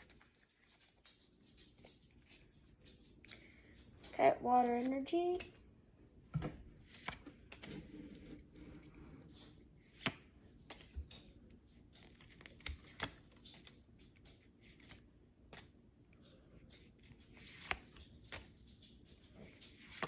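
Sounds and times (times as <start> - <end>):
cards rustling: 4.4 - 5.6, 6.8 - 15.8, 16.6 - 20.0.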